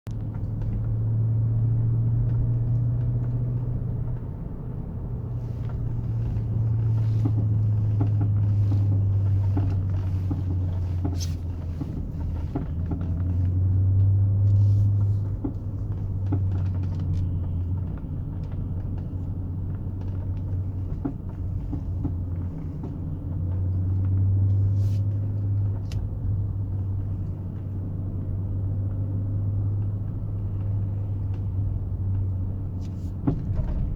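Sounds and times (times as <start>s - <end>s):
car engine humming: 0.1s - 33.9s
suspension clunks and knocks: 0.1s - 33.9s.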